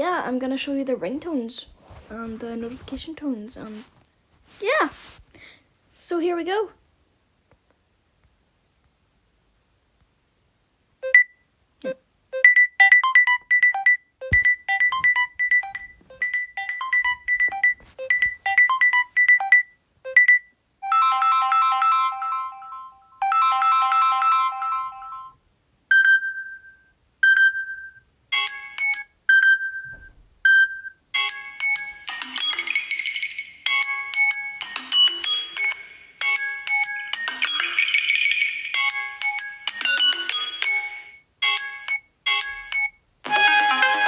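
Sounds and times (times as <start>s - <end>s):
phone ping: 12.4s - 25.3s, 25.9s - 44.0s
plucked ringtone melody: 12.8s - 19.6s, 20.8s - 25.4s, 27.4s - 29.9s, 30.6s - 44.0s
busy chiming melody: 31.2s - 44.0s.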